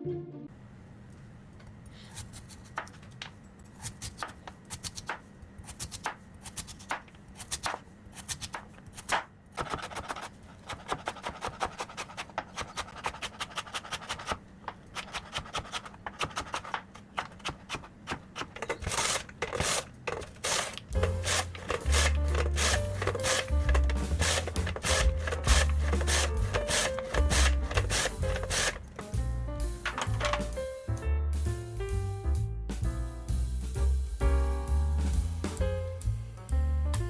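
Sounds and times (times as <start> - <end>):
knife cutting radish: 2.0 - 3.0, 3.8 - 28.8.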